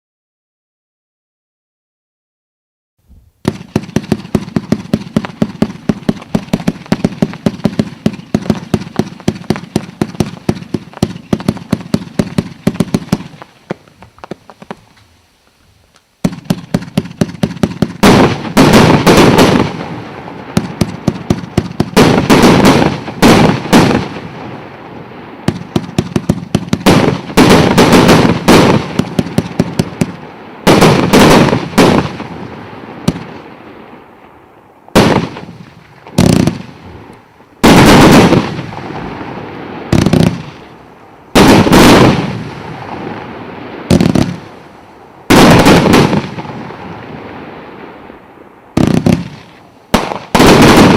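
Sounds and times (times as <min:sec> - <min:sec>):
big firework bursts: 0:03.0 - 0:50.9
fireworks popping rapidly: 0:03.4 - 0:19.9, 0:20.5 - 0:24.2, 0:25.5 - 0:32.2, 0:35.0 - 0:39.1, 0:43.9 - 0:44.5, 0:45.3 - 0:46.5, 0:48.8 - 0:50.9.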